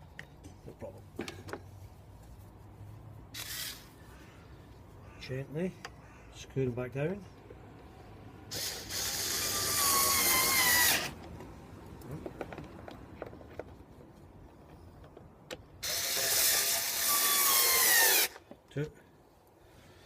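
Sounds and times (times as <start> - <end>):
cordless drill motor whine: 8.5 - 11.2, 15.8 - 18.4
small clicks and knocks: 11.2 - 15.7.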